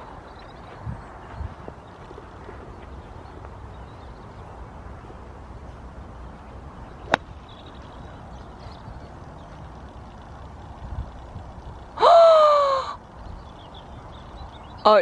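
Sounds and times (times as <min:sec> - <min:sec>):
low background noise: 0:00.0 - 0:15.0
golf club striking ball: 0:07.1 - 0:07.4.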